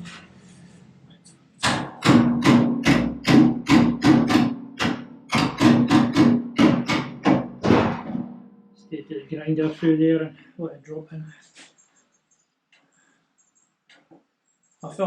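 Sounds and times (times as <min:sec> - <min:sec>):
hammer ringing on sheet steel: 0:01.6 - 0:08.7.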